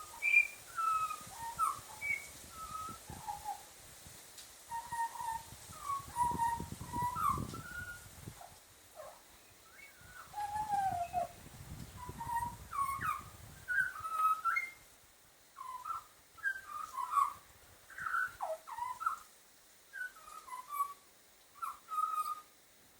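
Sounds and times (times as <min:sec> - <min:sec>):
bird whistling and warbling: 0:00.0 - 0:03.6, 0:04.7 - 0:08.1, 0:09.0 - 0:11.4, 0:12.0 - 0:14.8, 0:15.6 - 0:19.2, 0:19.9 - 0:21.0, 0:21.6 - 0:22.5.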